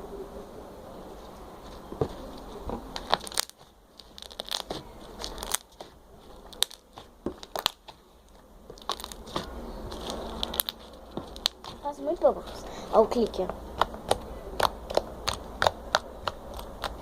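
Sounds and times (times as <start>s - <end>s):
slime popping and clicking: 6.5s - 7.9s.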